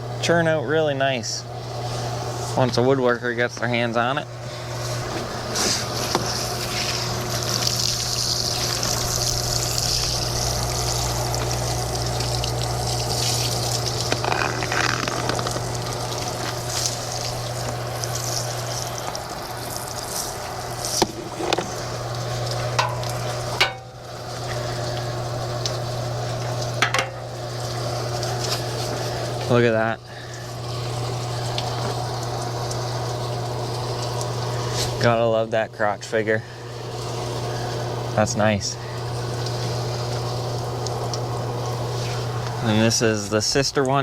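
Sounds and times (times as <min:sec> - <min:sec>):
constant hiss: 0:00.0 - 0:44.0
engine hum: 0:04.2 - 0:35.0.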